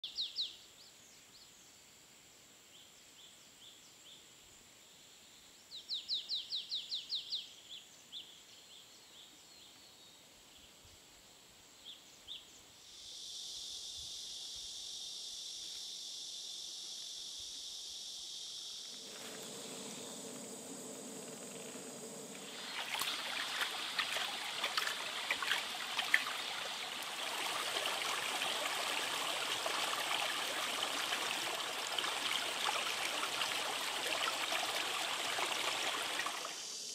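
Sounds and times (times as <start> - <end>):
steady high hiss: 11.1 - 36.9
crackly rushing noise: 18.9 - 27.8
birds chirping: 18.9 - 31.8.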